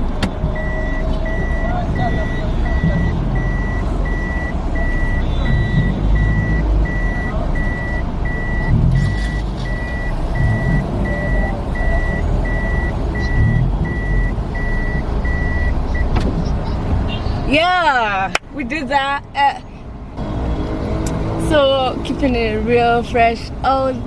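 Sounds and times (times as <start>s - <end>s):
vehicle warning beeper: 0.0s - 16.8s
car rumbling: 0.0s - 24.0s.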